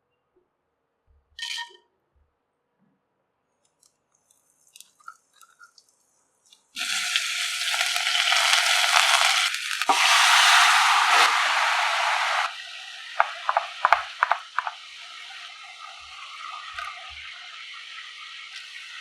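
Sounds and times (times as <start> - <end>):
hot oil sizzling: 6.8 - 19.0.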